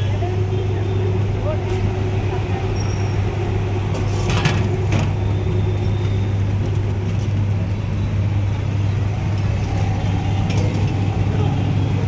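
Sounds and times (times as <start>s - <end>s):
street noise drone: 0.0s - 12.0s.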